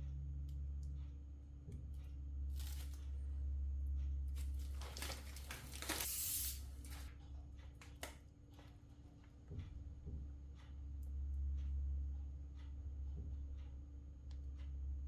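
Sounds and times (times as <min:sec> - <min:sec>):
soft rustling and scraping: 0:02.6 - 0:03.2, 0:04.4 - 0:07.1.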